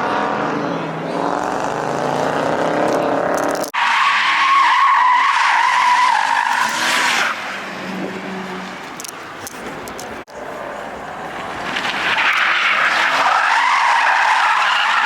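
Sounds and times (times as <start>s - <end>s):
car engine revving: 0.0s - 3.8s.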